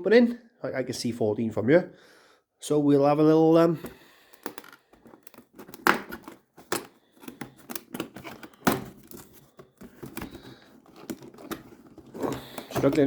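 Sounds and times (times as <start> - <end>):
card scraping: 5.2 - 13.0
cardboard being torn open: 5.5 - 13.0.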